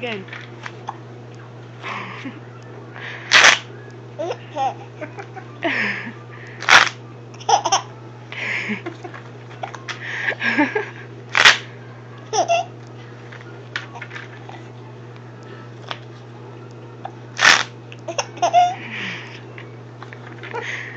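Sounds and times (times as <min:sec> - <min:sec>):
baby laughing with hiccups: 0:07.4 - 0:07.9, 0:12.3 - 0:12.7, 0:18.1 - 0:18.8.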